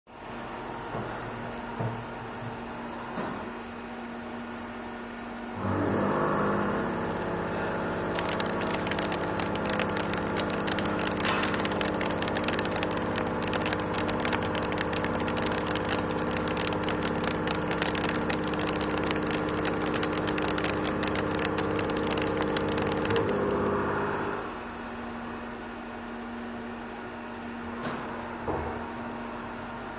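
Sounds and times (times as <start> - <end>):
machine spindle humming: 5.6 - 24.4
milling cutter crackling: 6.6 - 23.7.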